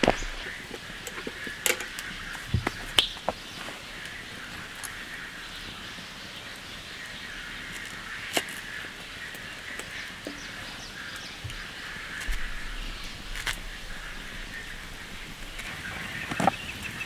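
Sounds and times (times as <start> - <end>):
rain hiss: 0.0 - 1.8
drops tapping: 0.0 - 3.4.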